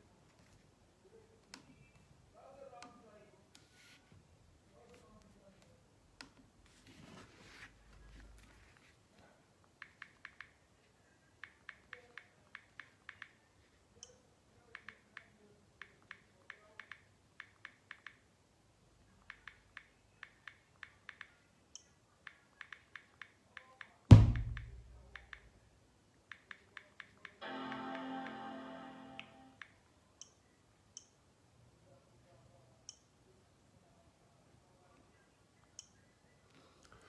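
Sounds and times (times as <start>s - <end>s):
deep bass drum boom: 24.1s - 25.0s.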